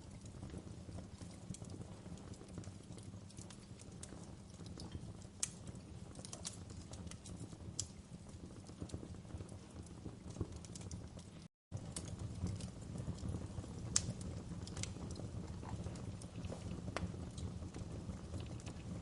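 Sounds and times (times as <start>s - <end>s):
fire rumbling: 0.0s - 19.0s.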